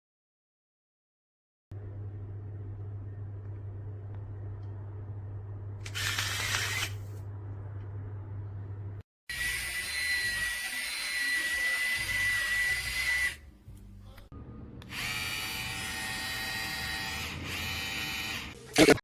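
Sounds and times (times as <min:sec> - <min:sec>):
electric grinder motor whirring: 0:05.9 - 0:07.0, 0:09.3 - 0:13.4, 0:14.8 - 0:18.9.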